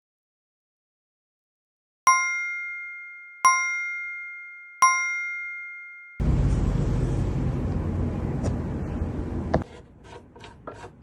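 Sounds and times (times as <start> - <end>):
bell-like chime: 2.1 - 6.2
low rumbling noise: 6.2 - 9.6.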